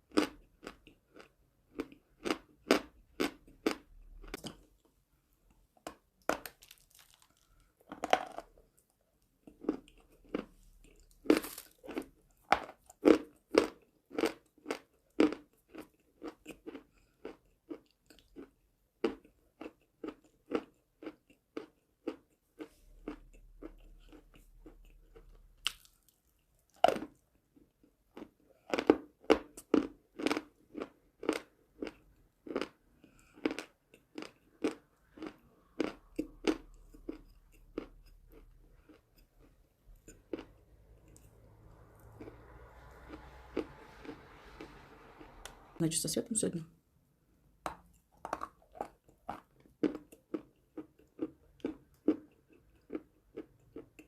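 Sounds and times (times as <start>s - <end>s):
person crunching chalk: 11.2s - 12.8s.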